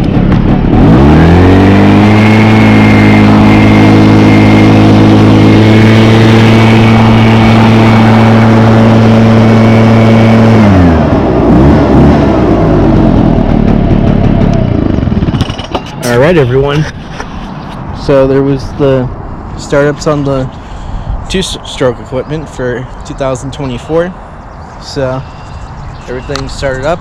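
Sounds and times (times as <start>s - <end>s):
rushing air: 0.0s - 13.2s, 14.7s - 22.0s
leaf blower engine: 0.0s - 17.7s.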